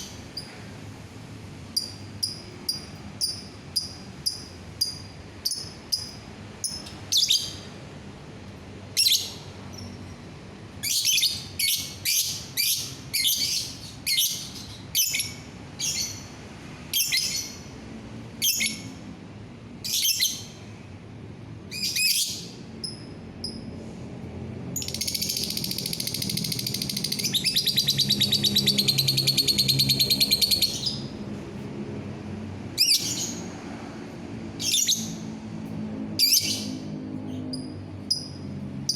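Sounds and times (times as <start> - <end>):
bird chirping: 1.8 - 7.6, 10.8 - 16.3, 24.8 - 31.1
bird chattering trill: 24.8 - 31.0.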